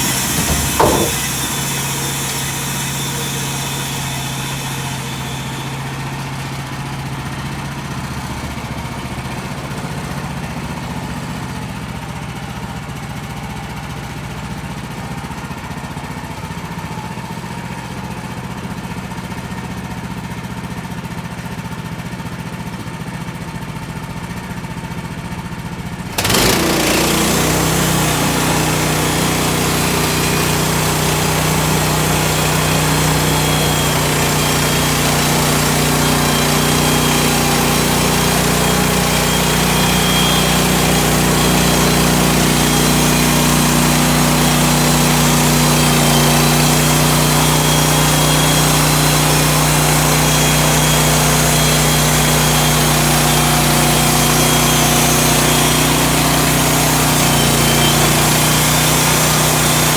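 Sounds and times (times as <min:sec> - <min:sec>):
band saw cutting log: 0:00.0 - 0:11.8, 0:26.0 - 0:59.9
gas engine running: 0:00.0 - 0:19.8, 0:25.8 - 0:59.9.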